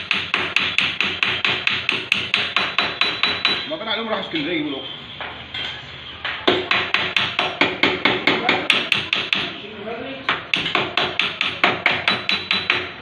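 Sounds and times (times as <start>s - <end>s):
hammer tapping sheet metal: 0.0s - 3.8s, 5.6s - 9.6s, 10.3s - 13.0s.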